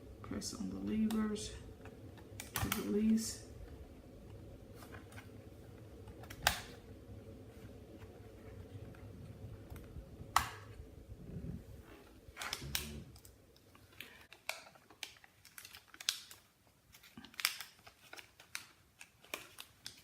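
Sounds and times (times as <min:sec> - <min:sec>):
plastic crinkling: 0:11.8 - 0:20.0.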